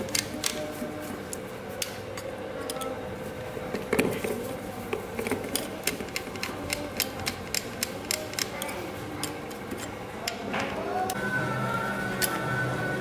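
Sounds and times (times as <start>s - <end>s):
clicks and taps of metal tools: 4.9s - 11.2s.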